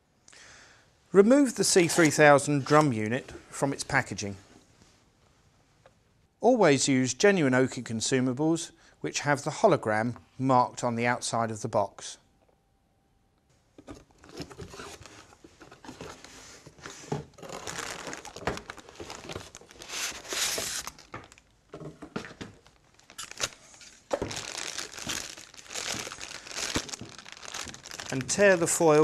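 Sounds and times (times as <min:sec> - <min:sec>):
packaging crinkling and tearing: 0:17.3 - 0:21.6, 0:22.5 - 0:29.0.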